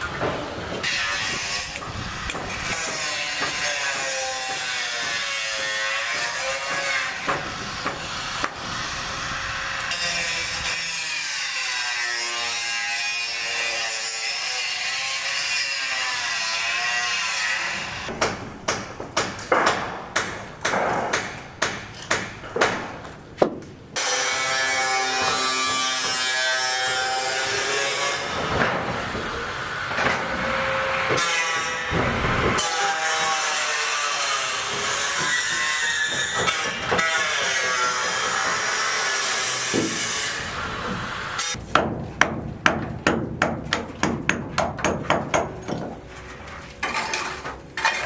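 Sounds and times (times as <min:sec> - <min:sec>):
sharp knocks: 0:18.1 - 0:23.8, 0:41.7 - 0:46.0.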